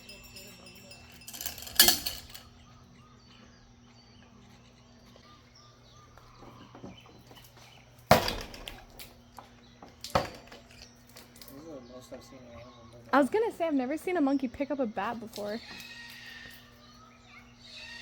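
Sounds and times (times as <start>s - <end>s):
bat banging on enclosure: 8.0s - 9.1s.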